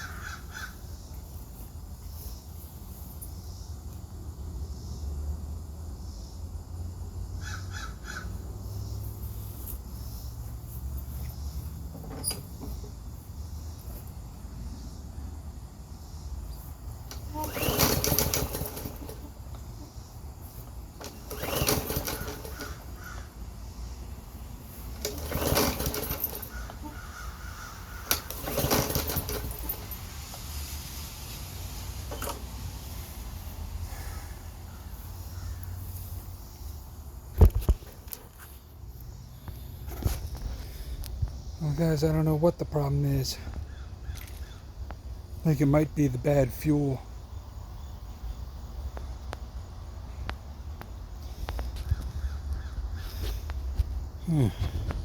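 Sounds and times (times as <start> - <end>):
lawn mower recoil cord pull: 9.0 - 13.0, 17.0 - 23.4, 24.6 - 33.0.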